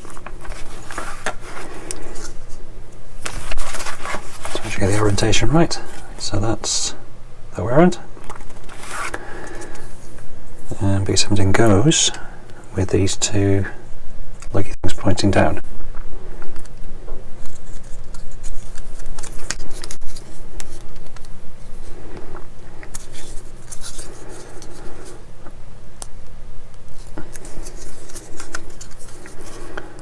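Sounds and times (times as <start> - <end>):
scratchy rustles: 0.0 - 2.6, 3.2 - 6.2, 8.4 - 10.2, 21.7 - 25.2, 27.0 - 30.0.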